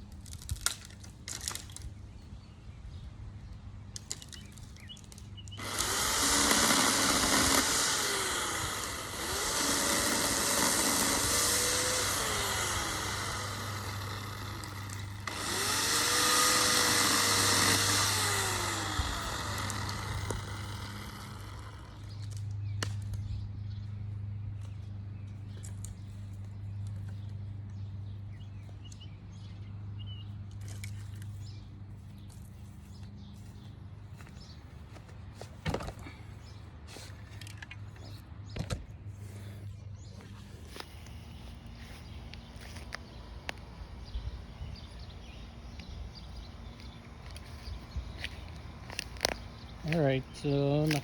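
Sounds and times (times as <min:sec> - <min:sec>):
chainsaw cutting wood: 0:05.5 - 0:22.4, 0:38.5 - 0:51.0.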